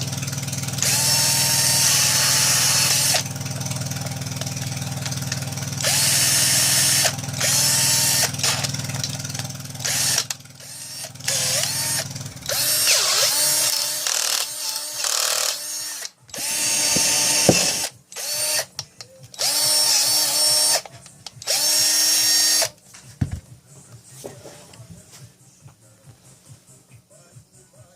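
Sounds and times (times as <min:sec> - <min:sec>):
cordless drill motor whining: 0:00.8 - 0:22.8.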